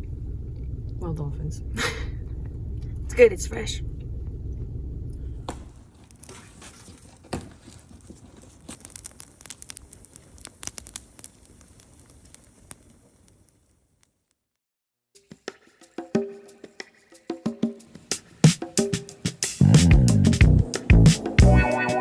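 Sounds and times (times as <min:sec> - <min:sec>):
low rumble: 0:00.0 - 0:05.5, 0:19.6 - 0:21.6
wrapping crinkling and tearing: 0:05.8 - 0:13.5.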